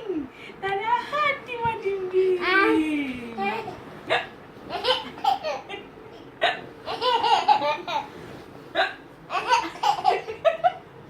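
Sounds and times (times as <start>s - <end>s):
person hiccuping: 8.7s - 9.1s.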